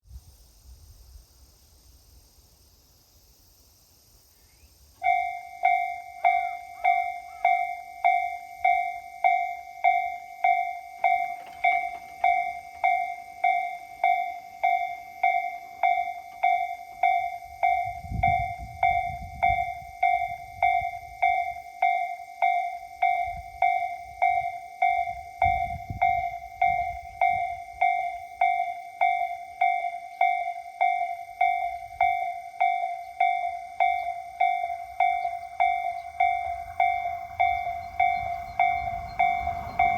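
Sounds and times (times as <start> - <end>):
level crossing warning bell: 5.0 - 39.9
low rumbles: 34.1 - 39.9.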